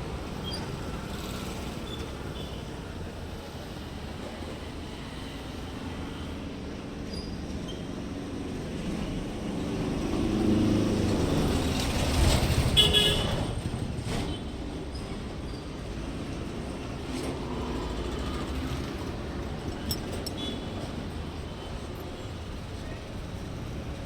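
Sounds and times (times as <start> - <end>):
car horn toot: 12.8 - 13.3.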